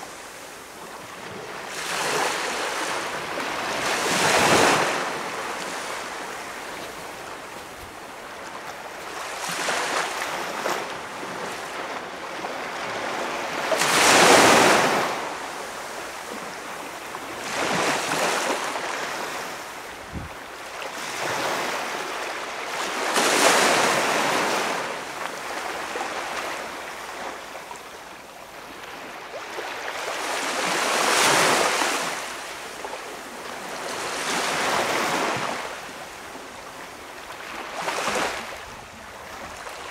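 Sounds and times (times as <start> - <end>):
small waves breaking on beach: 0.0 - 39.9.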